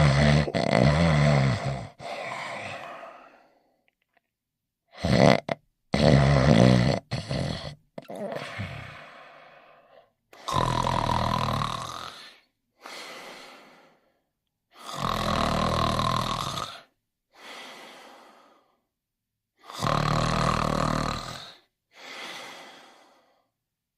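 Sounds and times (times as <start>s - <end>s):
loud snoring: 0.0s - 3.4s, 4.9s - 12.5s, 14.8s - 16.9s, 19.6s - 21.7s
quiet out-breath: 1.9s - 3.9s, 8.2s - 10.5s, 12.1s - 14.2s, 17.3s - 18.9s, 21.4s - 23.6s.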